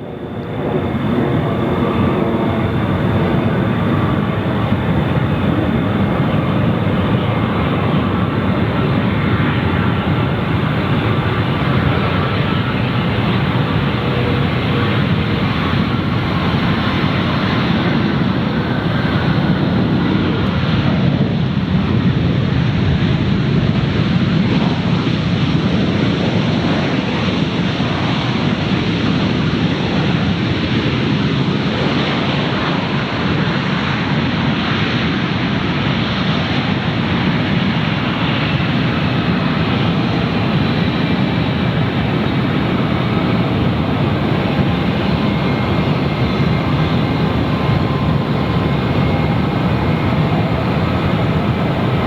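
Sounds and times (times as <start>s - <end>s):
faint high whine: 0.0s - 20.6s, 36.8s - 52.0s
jet engines rushing: 0.0s - 25.2s, 31.9s - 52.0s.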